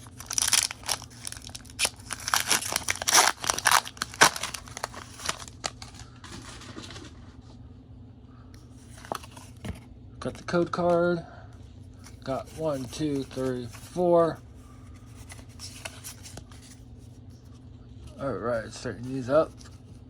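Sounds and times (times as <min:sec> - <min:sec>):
foil wrapper tearing and crinkling: 0:00.0 - 0:06.1
cards being handled: 0:00.0 - 0:07.1, 0:08.8 - 0:09.8, 0:12.0 - 0:17.0
faint low hum: 0:00.0 - 0:20.0.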